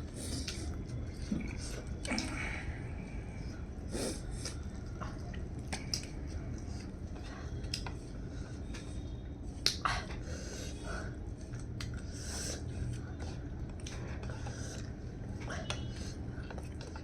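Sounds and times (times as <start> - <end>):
wet chewing: 11.2 - 15.0.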